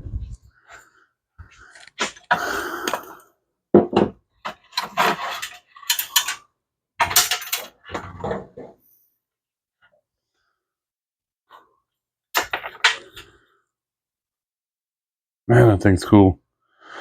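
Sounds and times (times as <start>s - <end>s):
metal parts clattering and scraping: 4.4s - 8.7s, 12.4s - 13.3s.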